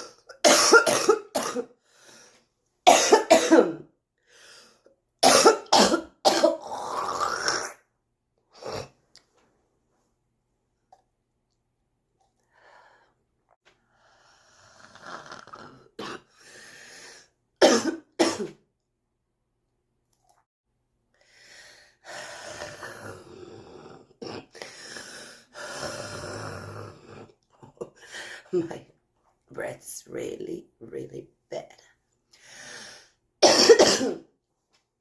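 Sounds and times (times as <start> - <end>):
person coughing harshly: 0.0 - 1.7, 2.9 - 3.8, 5.2 - 6.8, 17.6 - 18.6, 33.4 - 34.3
noisy breaths: 32.3 - 33.2.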